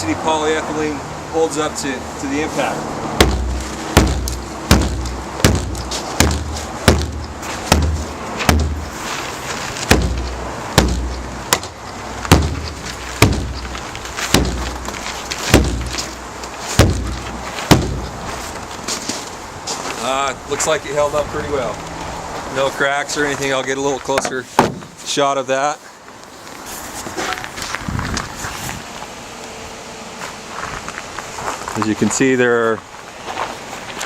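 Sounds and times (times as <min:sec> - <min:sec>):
hard blows on frozen plastic: 0:02.6 - 0:19.1.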